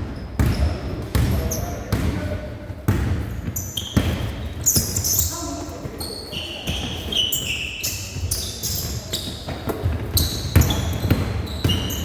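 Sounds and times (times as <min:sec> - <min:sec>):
sneakers squeaking on court: 0:00.0 - 0:02.3, 0:02.9 - 0:12.0
basketball bouncing: 0:02.9 - 0:05.1, 0:08.8 - 0:12.0.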